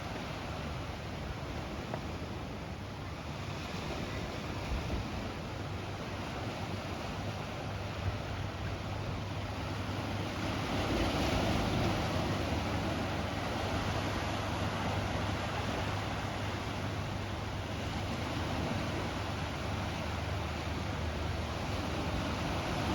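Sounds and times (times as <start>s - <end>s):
ocean surf washing on shore: 0.0s - 22.9s.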